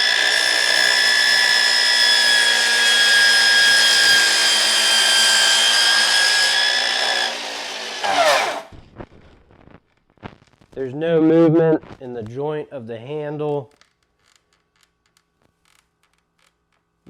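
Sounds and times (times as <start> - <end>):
miter saw cutting wood: 0.0 - 8.7
saw blade braking: 0.0 - 8.7.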